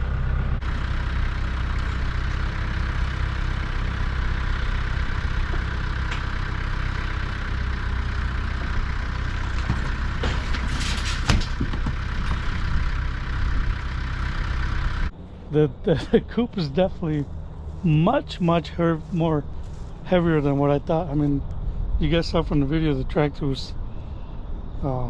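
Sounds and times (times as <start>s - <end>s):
tractor engine running: 0.0s - 25.0s
knocks and rattles: 4.4s - 14.5s.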